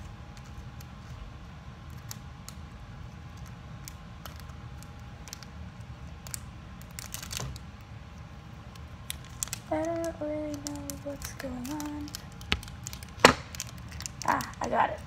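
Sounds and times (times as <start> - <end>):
packaging crinkling and clicking: 6.1 - 7.7, 8.7 - 15.0.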